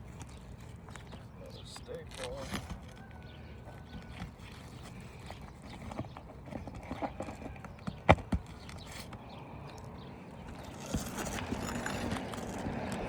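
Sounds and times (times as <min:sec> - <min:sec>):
hand tools scraping shingles: 0:10.5 - 0:13.0.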